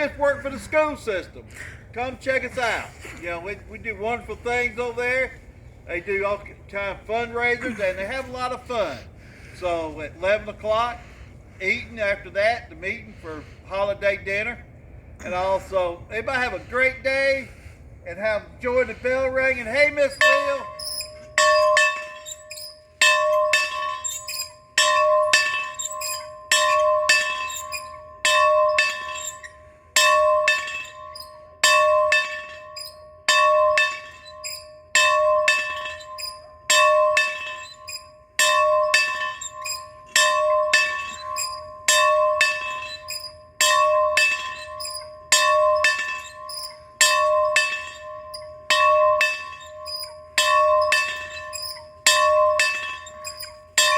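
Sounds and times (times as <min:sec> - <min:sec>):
bell ringing: 0:20.1 - 0:53.9.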